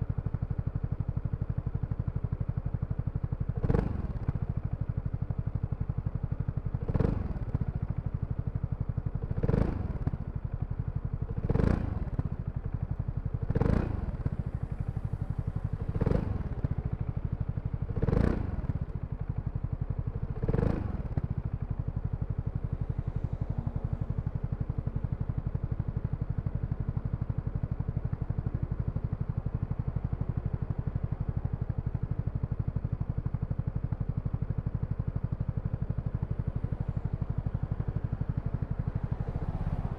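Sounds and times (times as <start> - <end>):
scooter engine idling: 0.0 - 39.9.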